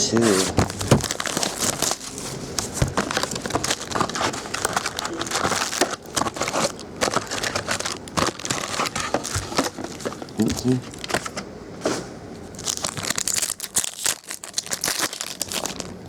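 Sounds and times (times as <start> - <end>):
foil wrapper crinkling: 0.0 - 11.5, 12.4 - 16.0.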